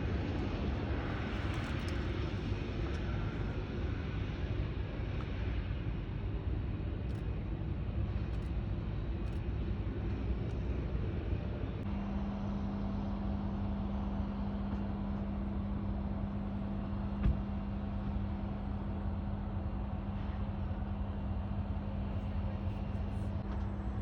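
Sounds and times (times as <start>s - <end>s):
jet engines rumbling: 0.0s - 24.0s
steady hum: 10.8s - 24.0s.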